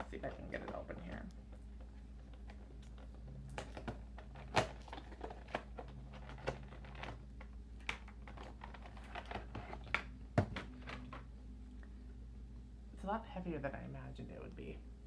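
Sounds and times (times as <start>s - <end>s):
packaging crackling: 1.4s - 11.3s.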